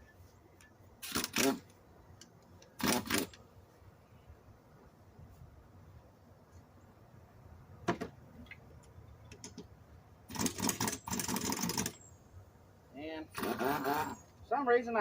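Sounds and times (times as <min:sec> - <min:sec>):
pneumatic impact wrench bursts: 0:01.0 - 0:01.7, 0:02.8 - 0:03.4, 0:10.3 - 0:12.0, 0:13.3 - 0:14.3.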